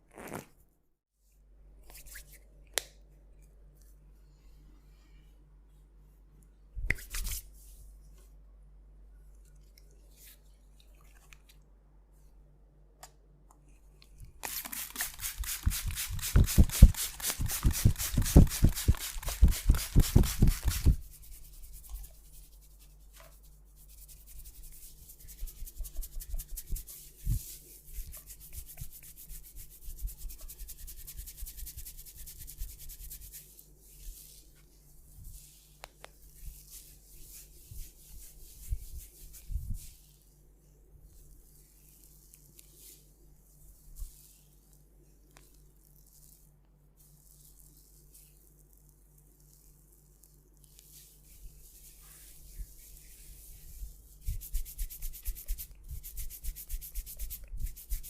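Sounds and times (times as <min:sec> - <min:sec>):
hands rubbing hair: 0:00.1 - 0:00.5, 0:06.8 - 0:08.3, 0:14.3 - 0:40.3, 0:41.1 - 0:46.4, 0:49.4 - 0:58.0.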